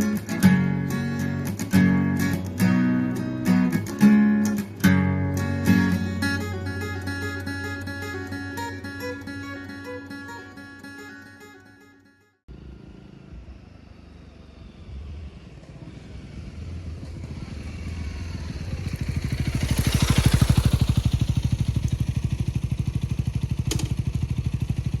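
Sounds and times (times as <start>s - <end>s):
motorcycle engine running: 12.5s - 25.0s.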